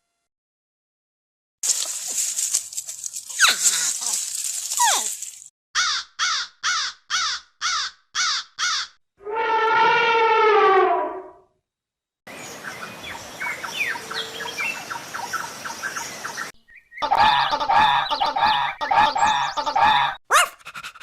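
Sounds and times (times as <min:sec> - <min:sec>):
harsh crow-like caws: 0:05.8 - 0:09.0.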